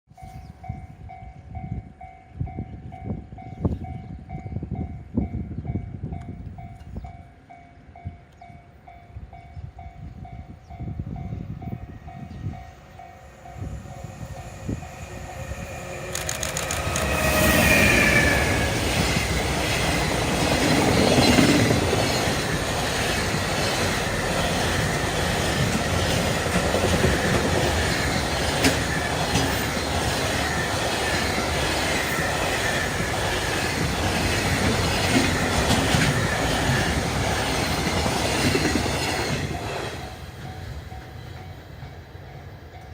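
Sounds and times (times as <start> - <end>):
freight train passing: 0.1 - 42.9.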